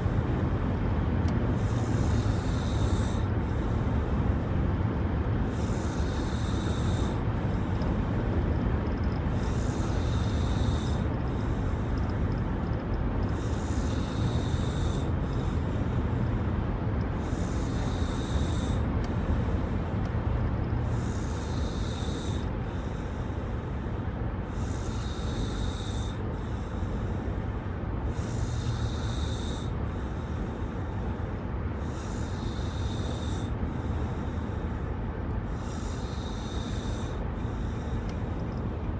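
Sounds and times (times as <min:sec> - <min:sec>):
car rumble: 0:00.0 - 0:25.0, 0:26.0 - 0:38.9
woman snoring: 0:01.6 - 0:04.0, 0:05.5 - 0:07.8, 0:09.3 - 0:11.9, 0:13.3 - 0:15.8, 0:17.2 - 0:19.4, 0:20.8 - 0:22.5, 0:24.5 - 0:26.2, 0:28.1 - 0:29.8, 0:31.9 - 0:33.6, 0:35.5 - 0:38.1.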